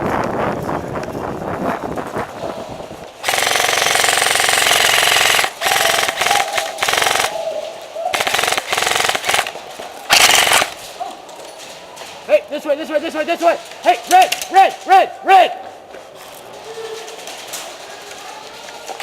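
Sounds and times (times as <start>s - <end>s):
airsoft gun firing full auto: 3.2s - 7.4s, 8.1s - 10.8s.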